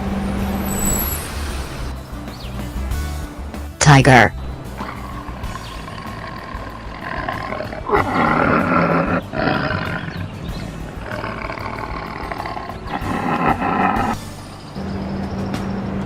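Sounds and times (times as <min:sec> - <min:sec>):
tiger roaring and growling: 0:04.7 - 0:14.2.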